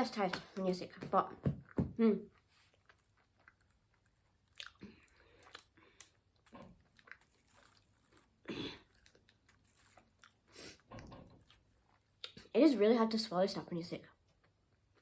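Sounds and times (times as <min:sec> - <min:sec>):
person chewing a snack: 0:02.3 - 0:12.5.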